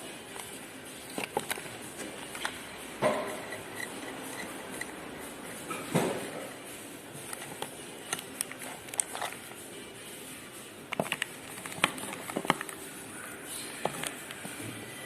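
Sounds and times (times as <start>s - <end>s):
hand tools clicking and knocking: 0.3s - 5.0s, 10.9s - 12.8s, 13.8s - 14.6s.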